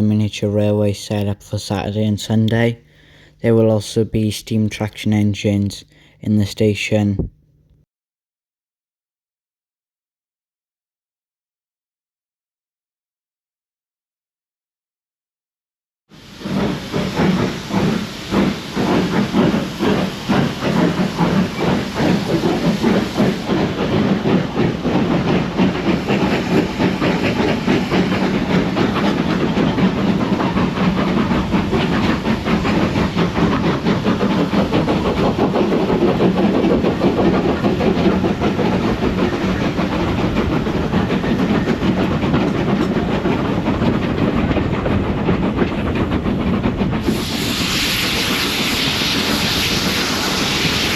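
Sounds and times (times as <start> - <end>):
steam locomotive exhaust beats: 0.0 - 7.4, 16.1 - 50.9
steam hissing: 16.2 - 43.8, 46.9 - 50.9.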